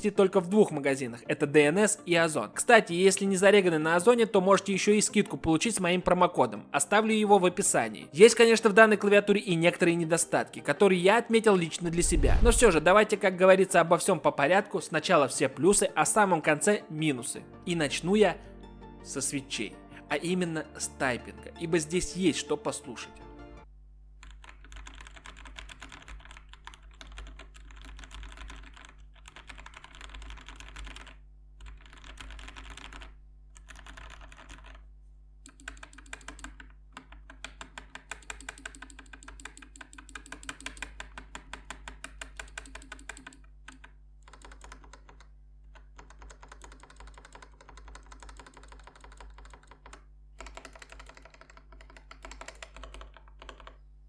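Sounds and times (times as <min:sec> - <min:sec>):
mechanical keyboard typing: 0:24.2 - 0:34.8, 0:35.5 - 0:53.8.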